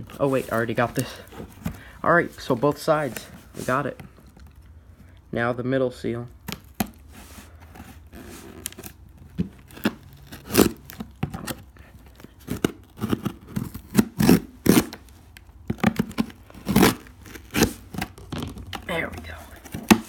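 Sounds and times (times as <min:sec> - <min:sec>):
knife cutting tape on cardboard: 0:09.6 - 0:11.6, 0:12.4 - 0:15.1, 0:15.7 - 0:18.9.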